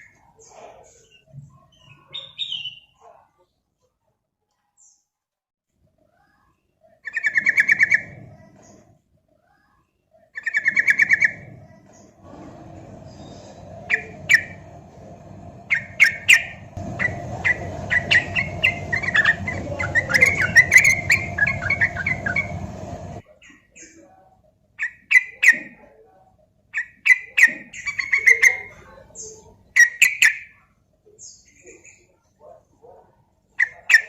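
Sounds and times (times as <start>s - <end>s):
bulbul singing: 12.6s - 23.2s.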